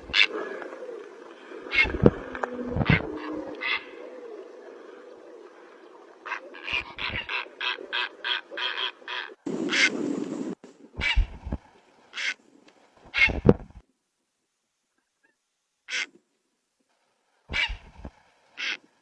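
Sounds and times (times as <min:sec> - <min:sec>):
bird harsh calls: 0:00.0 - 0:04.4.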